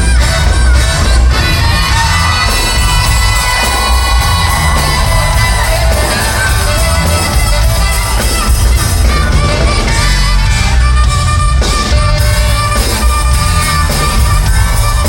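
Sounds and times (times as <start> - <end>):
heavy bass line: 0.0 - 15.0
loud band music: 0.0 - 15.0.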